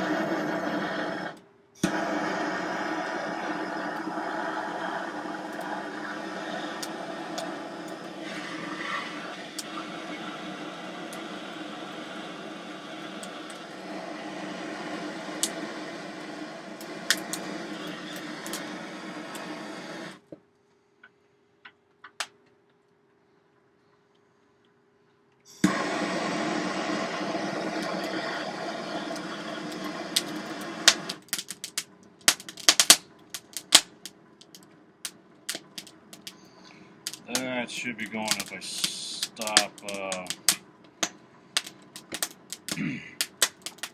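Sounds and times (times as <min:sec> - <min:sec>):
hand-cranked forge blower whirring: 0:00.0 - 0:20.3, 0:25.6 - 0:33.8, 0:35.5 - 0:43.9
fire popping: 0:00.0 - 0:20.4, 0:25.6 - 0:43.9
hand-cranked blower whirring: 0:25.6 - 0:31.2.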